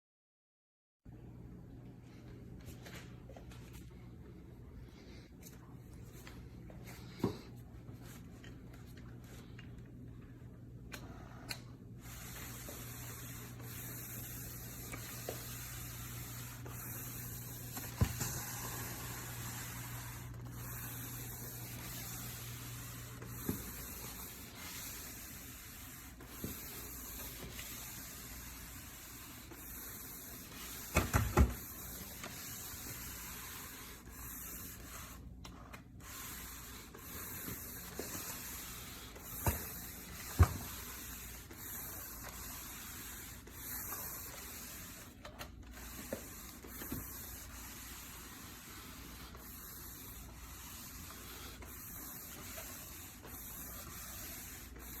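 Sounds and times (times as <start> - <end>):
mop pad scrubbing floor: 11.0 - 55.0.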